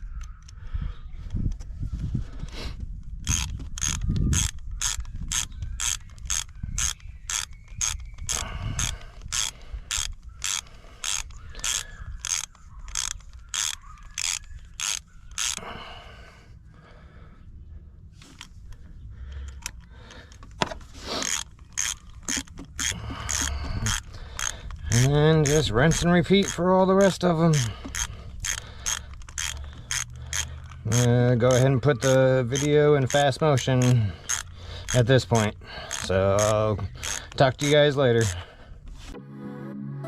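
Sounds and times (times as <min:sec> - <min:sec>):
ratchet wrench clicking: 0:03.2 - 0:15.7, 0:21.2 - 0:38.4.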